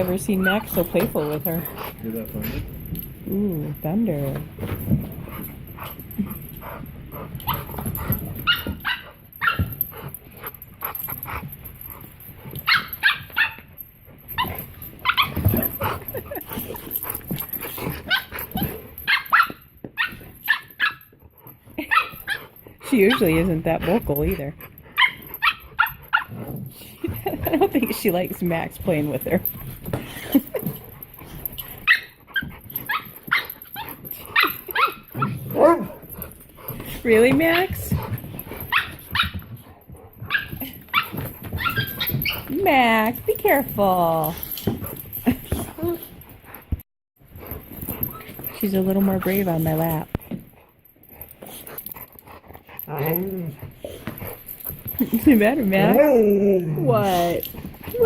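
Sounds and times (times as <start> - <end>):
puppy yipping and whining: 6.2 - 10.1, 12.5 - 21.2, 21.8 - 23.2, 24.8 - 26.5, 31.6 - 36.1, 38.4 - 39.6, 40.2 - 42.5, 56.9 - 58.0
puppy barking high-pitched yips: 8.4 - 9.7, 12.7 - 13.6, 19.1 - 21.0, 40.3 - 42.4.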